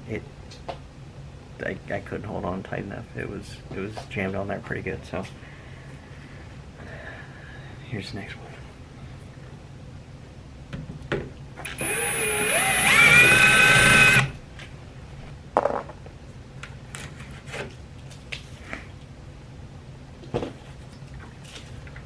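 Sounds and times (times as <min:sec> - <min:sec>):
cordless power drill running: 0:11.6 - 0:14.4.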